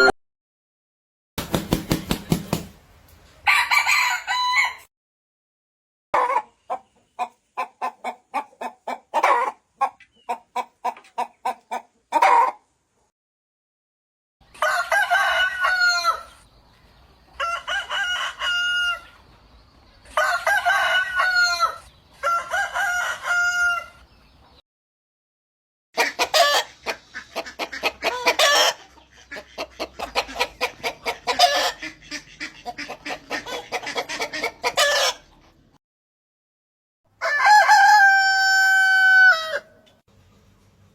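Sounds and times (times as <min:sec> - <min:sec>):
chicken clucking rapidly: 0:01.4 - 0:02.7, 0:06.2 - 0:13.1, 0:26.0 - 0:35.8
rooster crowing: 0:03.4 - 0:04.9, 0:14.5 - 0:16.4, 0:17.4 - 0:19.2, 0:20.2 - 0:24.0, 0:37.2 - 0:39.8.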